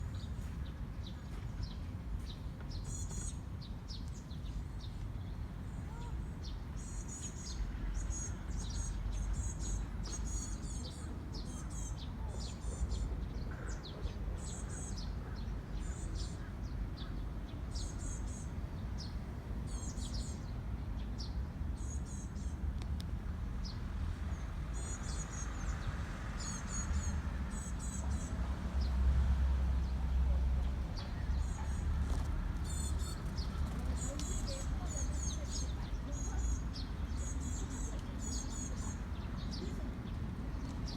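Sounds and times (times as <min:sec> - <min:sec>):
small birds chirping: 0:29.8 - 0:40.9.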